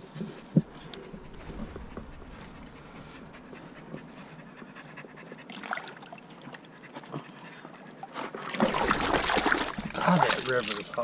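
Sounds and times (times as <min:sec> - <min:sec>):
quick panting breaths: 0:00.8 - 0:05.6.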